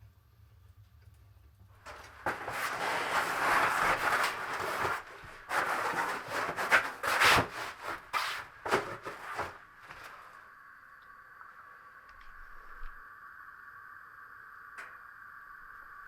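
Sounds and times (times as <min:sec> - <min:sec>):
rubbing and scraping: 0:01.9 - 0:10.3.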